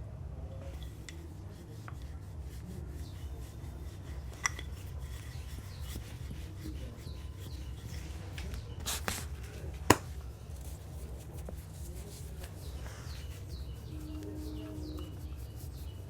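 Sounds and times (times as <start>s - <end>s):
light rubbing of massage: 0.0s - 16.0s
steady low hum: 0.0s - 16.0s.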